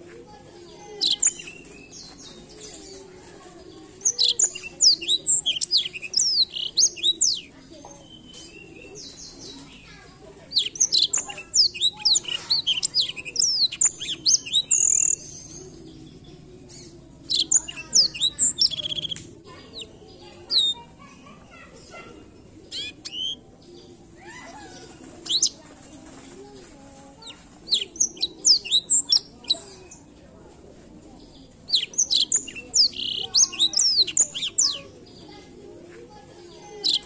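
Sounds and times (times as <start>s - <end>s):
canary singing high twittering notes: 0.7s - 3.0s, 4.0s - 22.0s, 22.7s - 23.4s, 24.2s - 25.6s, 27.2s - 30.0s, 31.7s - 34.9s.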